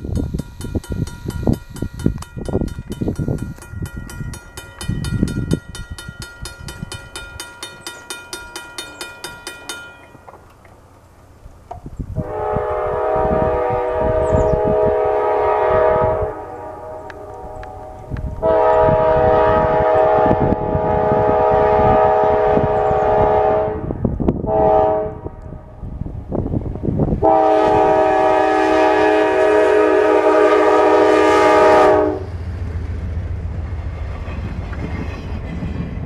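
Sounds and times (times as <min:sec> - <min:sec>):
train rumble and clatter: 0:00.0 - 0:36.0
locomotive air horn blasts: 0:12.2 - 0:25.7, 0:27.2 - 0:32.4.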